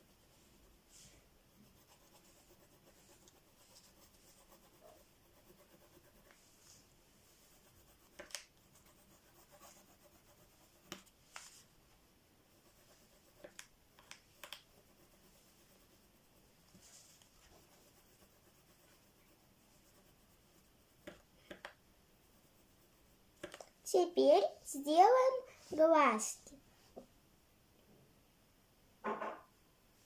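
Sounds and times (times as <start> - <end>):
pencil scratching on paper: 1.5 - 11.6, 12.5 - 13.7, 14.3 - 21.6, 22.2 - 23.6.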